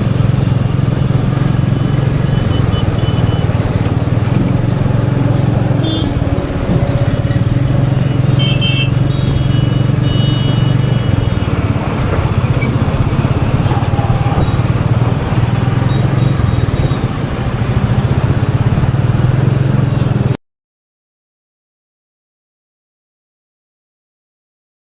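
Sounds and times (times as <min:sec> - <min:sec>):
motorcycle engine running: 0:00.0 - 0:20.4
high-pitched traffic tones: 0:00.2 - 0:18.0.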